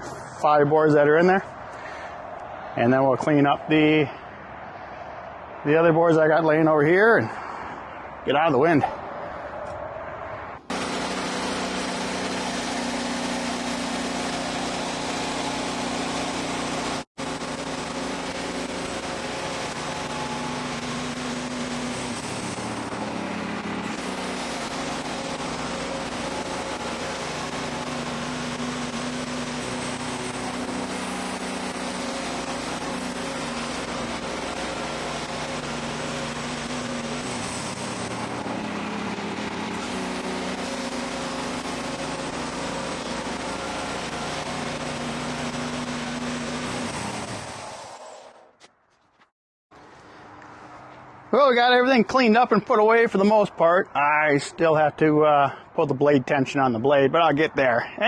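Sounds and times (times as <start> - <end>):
sawmill engine running: 10.6 - 48.5.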